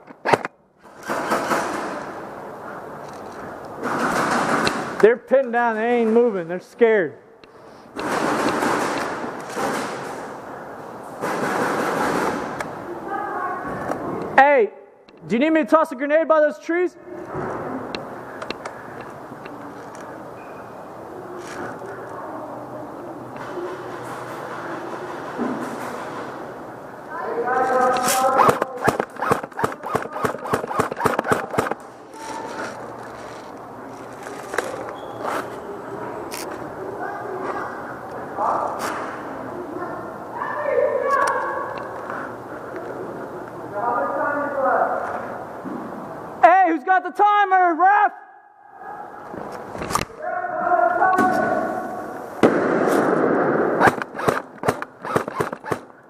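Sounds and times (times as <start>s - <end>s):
steady background noise: 0.0s - 56.0s
rapid sharp cracks: 7.9s - 10.4s, 27.6s - 34.8s, 52.4s - 56.0s
fast run of sharp clicks: 27.9s - 31.8s, 53.8s - 55.9s
grenade burst: 52.4s - 55.9s.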